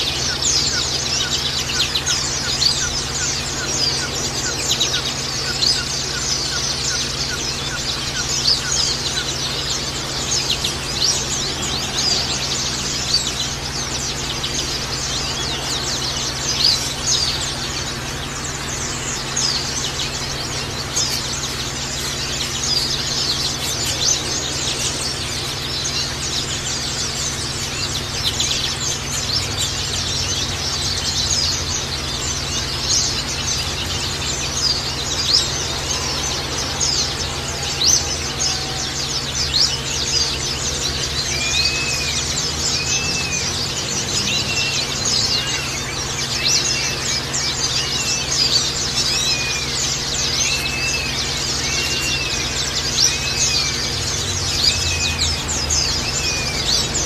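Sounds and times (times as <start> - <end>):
birds chirping and twittering: 0.0 - 57.0.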